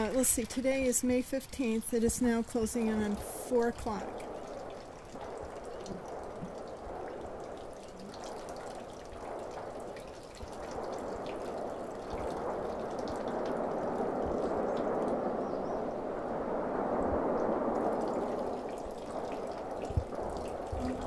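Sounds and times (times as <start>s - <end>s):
running water splashing: 0.0s - 15.4s, 17.2s - 21.0s.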